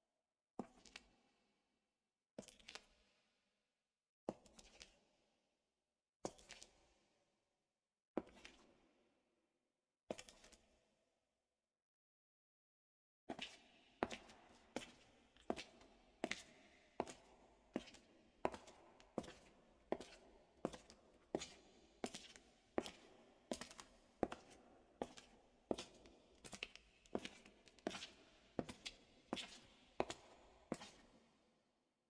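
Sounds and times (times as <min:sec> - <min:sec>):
footsteps on concrete: 0:17.8 - 0:31.2.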